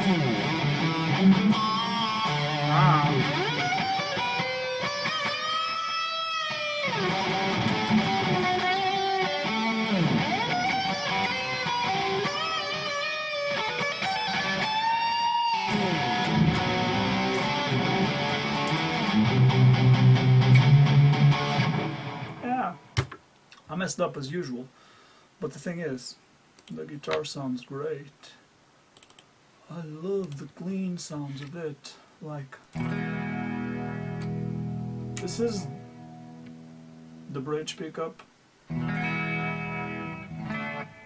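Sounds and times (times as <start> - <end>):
electric guitar lead with bends: 0.0 - 22.9, 32.8 - 37.3, 38.7 - 41.0.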